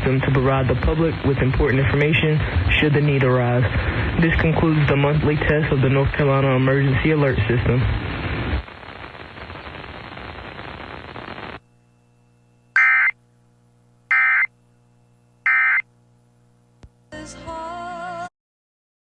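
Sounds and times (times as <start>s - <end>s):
radio hiss: 0.0s - 12.0s
alert data tone bursts: 12.7s - 13.2s, 14.1s - 14.5s, 15.4s - 15.9s
music: 17.1s - 18.3s.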